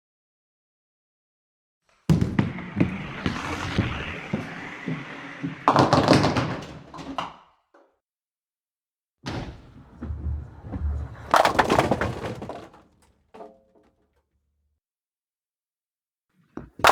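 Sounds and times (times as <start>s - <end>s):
bowling ball rolling rumble: 2.1s - 7.3s, 9.3s - 13.0s
bowling ball thud on lane: 9.3s - 12.8s
bowling pins clattering: 9.3s - 13.8s.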